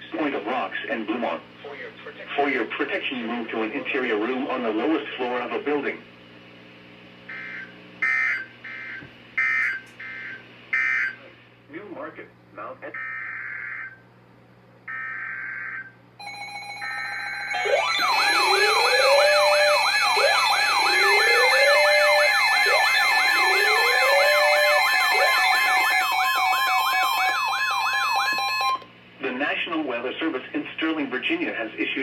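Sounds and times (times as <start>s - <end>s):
digital data bursts: 7.3s - 9.7s, 16.2s - 28.8s
warbling siren sweep: 7.3s - 11.1s, 15.0s - 28.8s
rising whoop alarm: 16.2s - 28.8s
steady attention tones: 16.2s - 28.9s.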